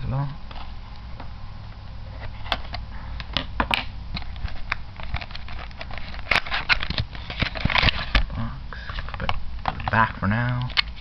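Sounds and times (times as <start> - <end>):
tape peeled off cardboard box: 4.5 - 8.2.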